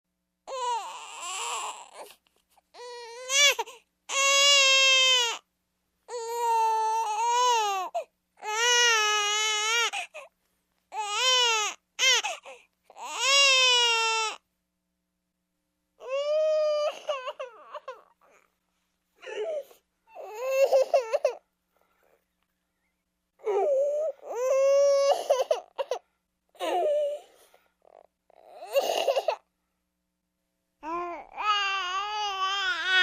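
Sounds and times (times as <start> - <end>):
baby crying: 0.5 - 2.2, 2.8 - 5.4, 6.1 - 10.3, 10.9 - 14.4, 16.0 - 18.4, 19.3 - 21.4, 23.4 - 26.0, 28.3 - 29.4, 30.8 - 33.0.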